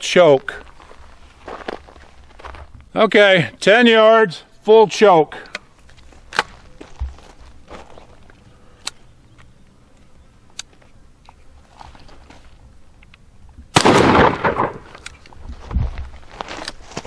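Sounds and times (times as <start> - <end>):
shotgun blast: 13.8 - 15.0.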